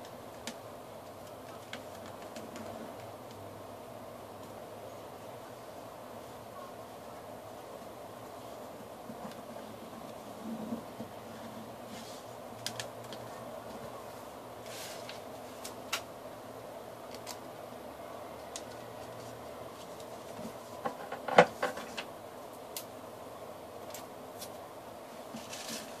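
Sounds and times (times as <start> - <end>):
steady room hum: 0.0 - 26.0
paper crinkling and folding: 25.3 - 26.0.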